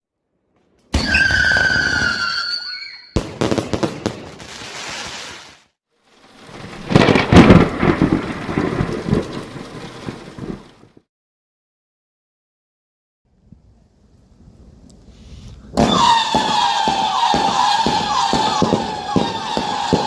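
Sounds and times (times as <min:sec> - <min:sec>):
firework whistling shot: 0:00.9 - 0:08.2, 0:15.7 - 0:20.0
rapid firework bangs: 0:03.2 - 0:05.5, 0:15.8 - 0:20.0
firework crackling: 0:03.2 - 0:11.0, 0:15.7 - 0:20.0.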